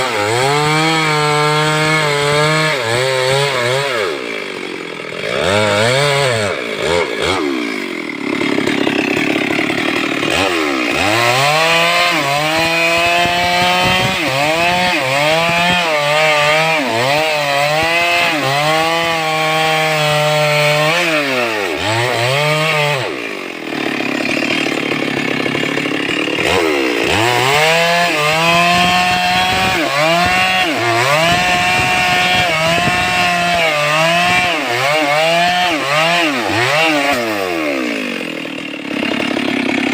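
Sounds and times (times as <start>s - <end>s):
chainsaw running at high revs: 0.0s - 39.9s.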